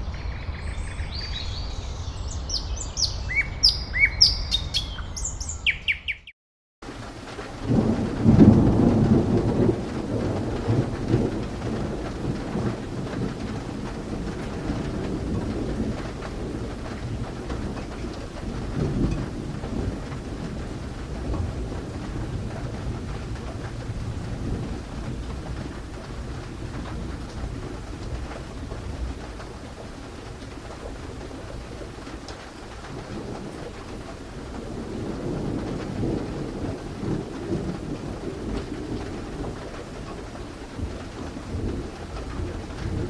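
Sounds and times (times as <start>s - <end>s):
birds chirping: 0.0s - 6.3s
low rumble of thunder: 6.8s - 43.0s
steady rush of rain: 6.8s - 43.0s.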